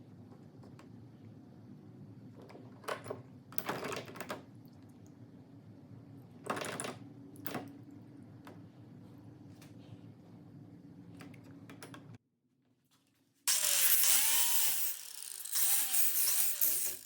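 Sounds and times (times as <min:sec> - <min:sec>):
small parts clattering: 0:13.5 - 0:17.0.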